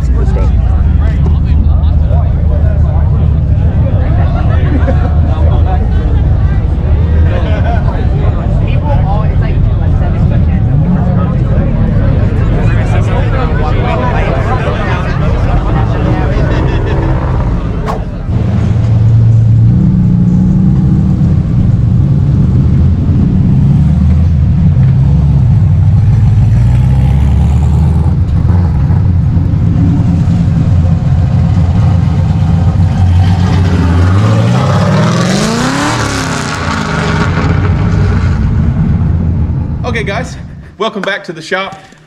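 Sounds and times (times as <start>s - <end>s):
car engines running: 0.0s - 41.0s
car revving and accelerating: 15.6s - 39.8s.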